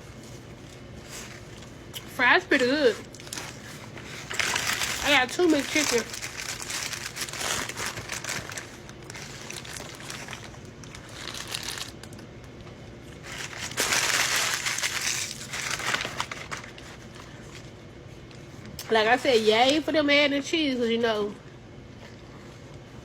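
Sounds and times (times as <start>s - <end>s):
paper wrapper crinkling: 2.6s - 12.5s, 13.1s - 17.8s.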